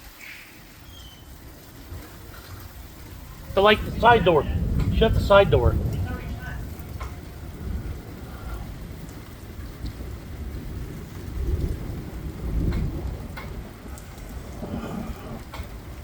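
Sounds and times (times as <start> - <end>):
rain falling steadily: 0.0 - 16.0
thunder rumbling: 1.4 - 16.0.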